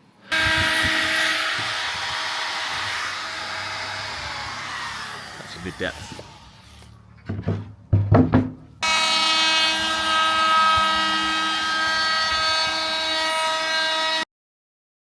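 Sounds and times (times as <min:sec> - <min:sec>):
router whining: 0:00.3 - 0:07.1, 0:08.8 - 0:14.2
short knocks: 0:07.2 - 0:08.7.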